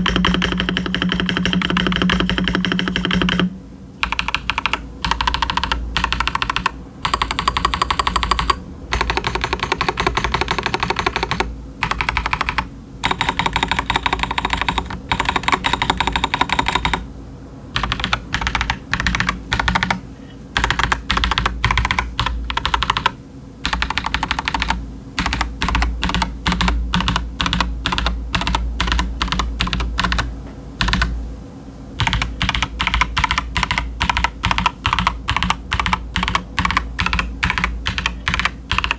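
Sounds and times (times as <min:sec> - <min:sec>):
mechanical keyboard typing: 0:00.0 - 0:17.0, 0:17.8 - 0:20.0, 0:20.6 - 0:31.1, 0:32.0 - 0:38.9.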